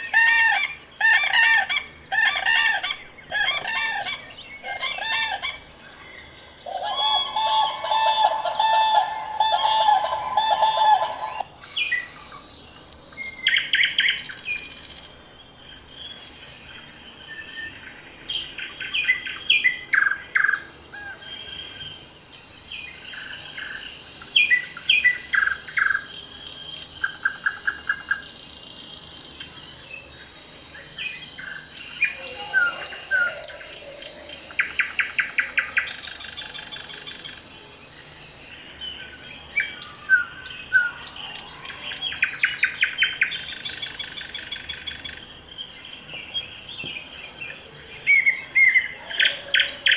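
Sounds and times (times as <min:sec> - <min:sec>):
birds chirping and whistling: 0:00.0 - 0:49.9
bird phrase repeating rapidly: 0:06.7 - 0:11.5.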